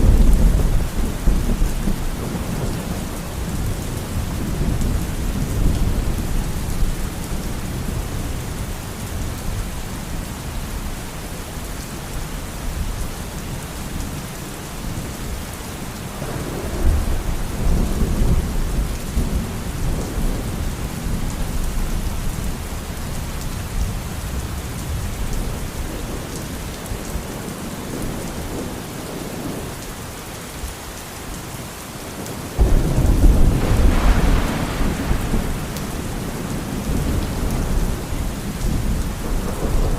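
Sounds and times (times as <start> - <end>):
rolling thunder: 0.0 - 8.0, 16.2 - 22.0, 32.6 - 39.9
steady rain: 0.0 - 39.9.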